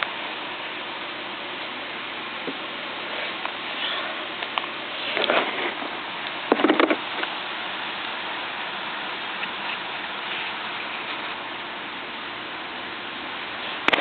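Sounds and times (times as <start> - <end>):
steady recording hiss: 0.0 - 14.0.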